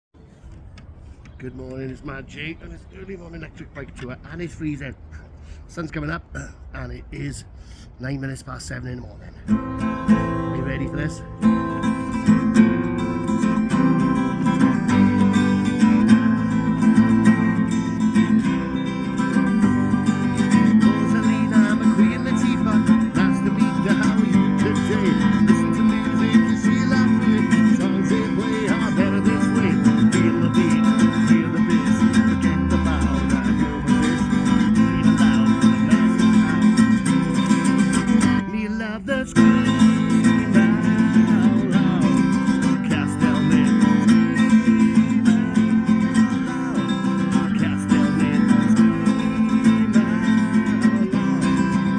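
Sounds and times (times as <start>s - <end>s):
strummed guitar music: 9.5s - 51.9s.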